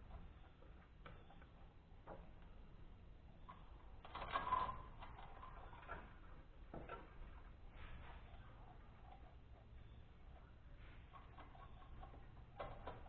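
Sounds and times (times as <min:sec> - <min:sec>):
metal parts clicking and tapping: 0:11.1 - 0:13.0.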